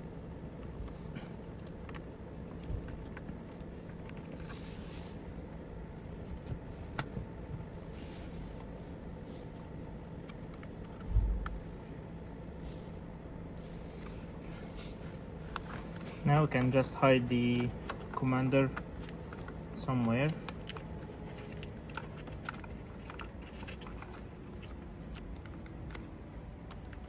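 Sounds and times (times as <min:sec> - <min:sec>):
low hum: 0:00.0 - 0:27.0
plastic parts clicking and scraping: 0:15.4 - 0:26.1.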